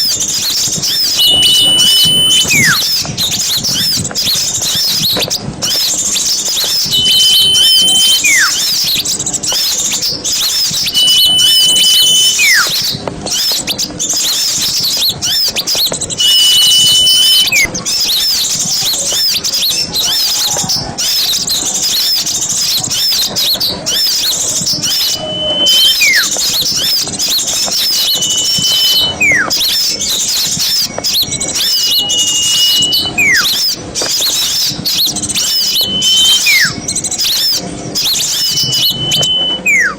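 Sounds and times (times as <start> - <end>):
small birds chirping: 0.0 - 39.9
whistled note falling sharply: 1.1 - 2.8, 6.9 - 8.6, 10.9 - 12.8, 16.2 - 17.7, 25.0 - 26.3, 28.0 - 29.5, 31.6 - 33.4, 35.5 - 36.8, 38.4 - 39.9.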